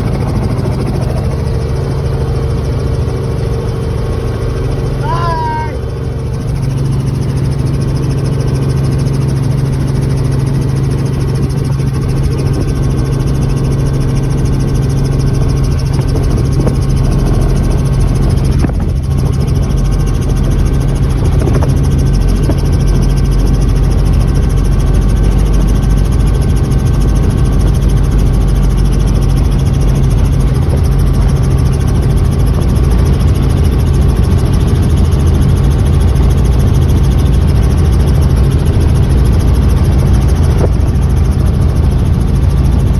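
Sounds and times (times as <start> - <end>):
helicopter engine and rotor drone: 0.0 - 42.9.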